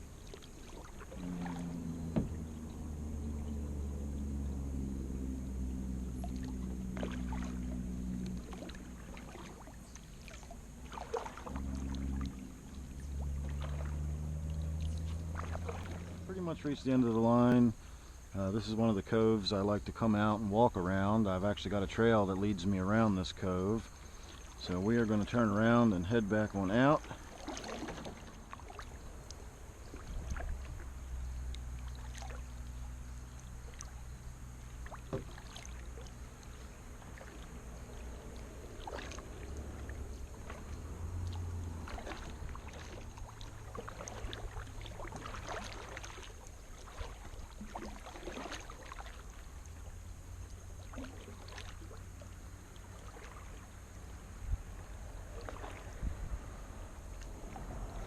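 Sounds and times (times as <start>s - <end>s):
paddle splashing in water: 0.0s - 18.1s, 23.8s - 58.0s
low steady rumble: 0.0s - 58.0s
water dripping: 27.9s - 46.3s.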